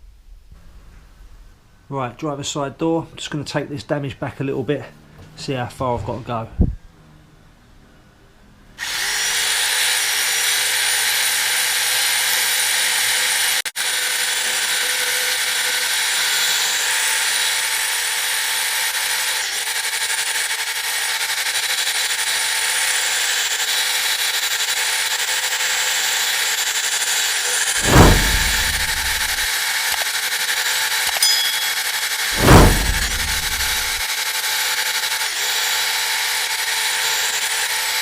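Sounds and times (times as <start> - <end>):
power tool whining on metal: 8.8 - 21.8, 35.0 - 38.0
heavy thump: 27.8 - 29.5, 32.4 - 34.0.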